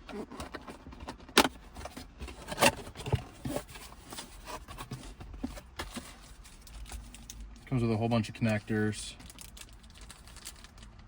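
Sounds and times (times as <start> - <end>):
cardboard box scraping and rustling: 0.0 - 6.5.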